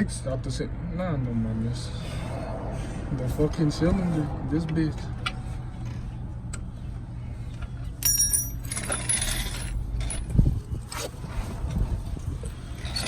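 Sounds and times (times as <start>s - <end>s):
steady low hum: 0.0s - 13.0s
metal tools clinking and scraping: 7.9s - 10.4s, 12.4s - 13.0s.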